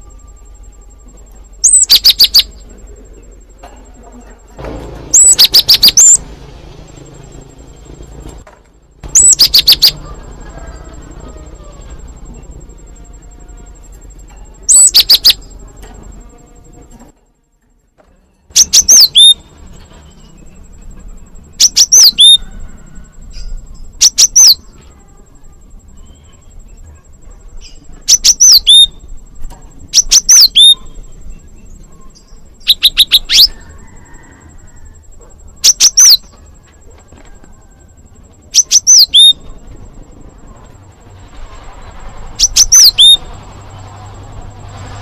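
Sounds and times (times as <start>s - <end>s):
bird giving sharp calls: 1.6s - 2.6s, 5.1s - 6.2s, 9.1s - 10.9s, 14.7s - 15.4s, 18.6s - 19.4s, 21.6s - 22.5s, 24.0s - 24.6s, 28.1s - 29.0s, 29.9s - 30.9s, 32.6s - 34.3s, 35.6s - 36.3s, 38.5s - 39.5s, 42.4s - 43.3s.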